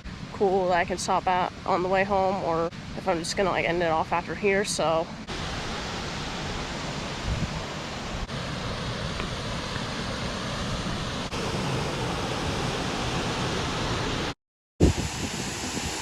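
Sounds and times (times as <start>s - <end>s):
wind buffeting microphone: 5.1s - 14.1s, 14.8s - 16.0s
waterfall rushing: 5.2s - 14.4s.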